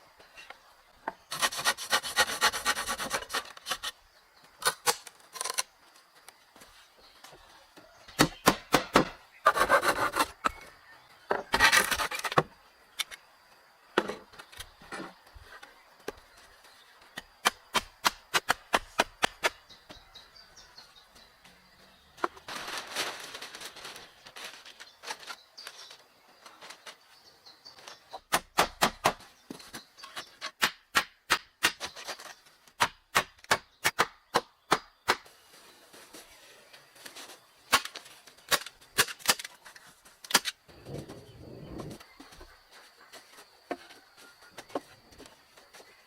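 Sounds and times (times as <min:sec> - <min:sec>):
scraping rustling noise: 0:22.3 - 0:27.3.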